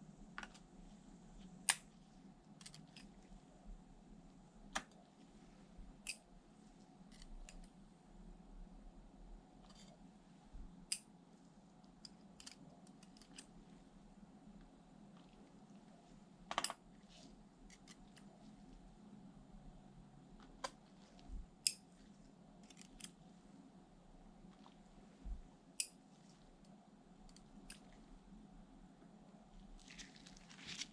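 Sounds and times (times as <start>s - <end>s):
faint steady hum: 0.0s - 30.9s
tools and parts clicking: 12.0s - 13.5s, 22.6s - 23.1s.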